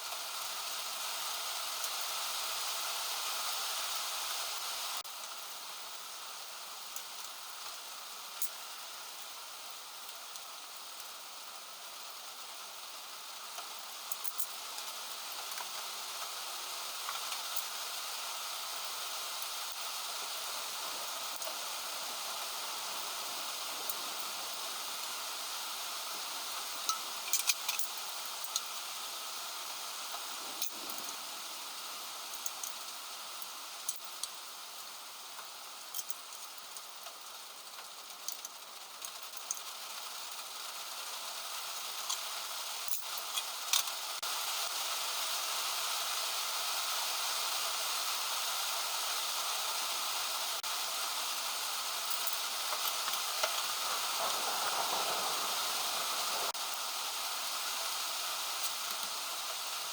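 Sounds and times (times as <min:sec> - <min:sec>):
heavy rain falling: 0:18.5 - 0:35.3, 0:47.4 - 0:59.9.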